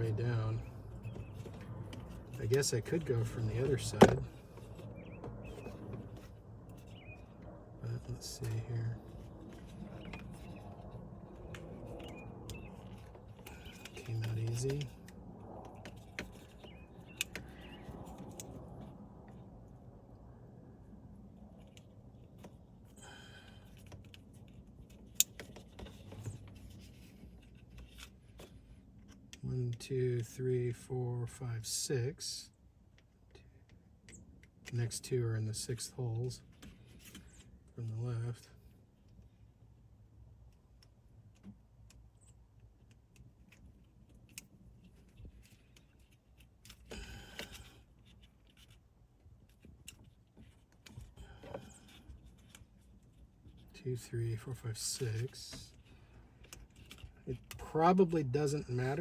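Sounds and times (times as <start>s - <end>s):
light handling noise: 0.0s - 19.5s.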